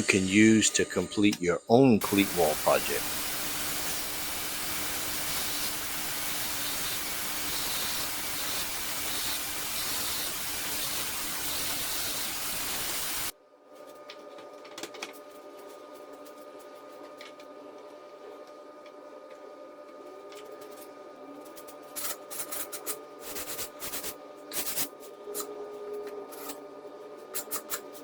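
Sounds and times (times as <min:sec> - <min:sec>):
steady even hiss: 0:01.8 - 0:13.3.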